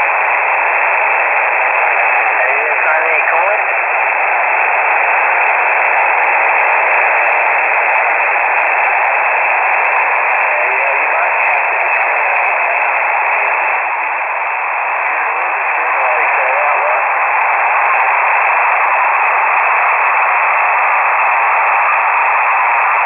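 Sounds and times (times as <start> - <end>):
radio static hiss: 0.0 - 23.0
faint voice under static: 2.3 - 3.8, 10.3 - 13.7, 15.2 - 17.1.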